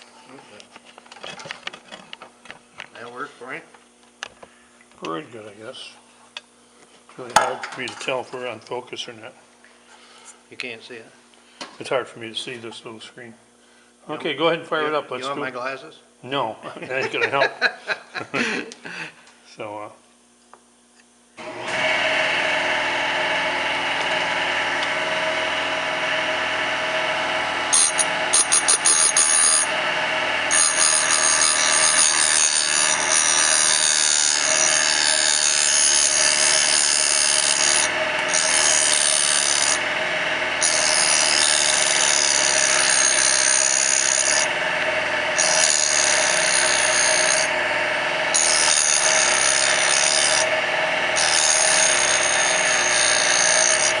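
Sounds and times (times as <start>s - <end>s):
milling machine motor running: 21.4s - 54.0s.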